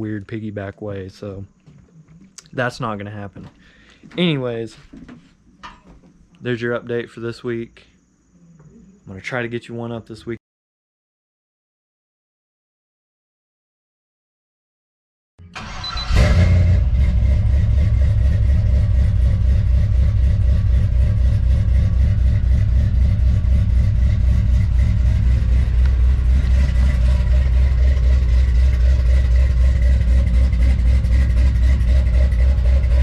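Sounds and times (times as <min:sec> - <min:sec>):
engine starting and idling: 0:15.4 - 0:33.0.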